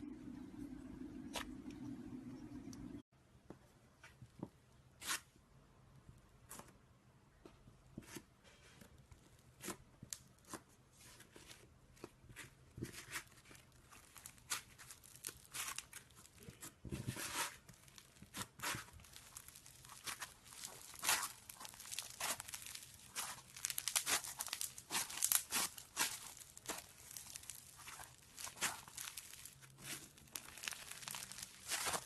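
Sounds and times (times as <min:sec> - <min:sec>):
slime squished by hand: 0:13.9 - 0:32.0.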